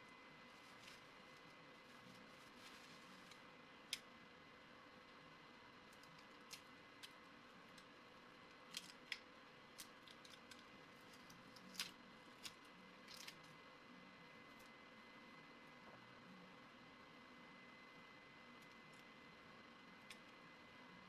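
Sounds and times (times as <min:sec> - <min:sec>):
small clicks and ticks: 0:05.9 - 0:13.6.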